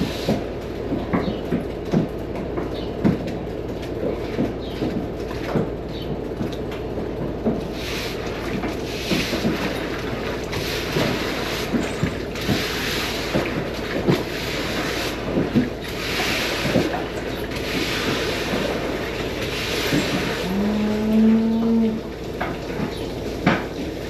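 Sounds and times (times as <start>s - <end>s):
broom swishing through water: 7.8s - 21.5s
cow mooing: 20.4s - 22.1s.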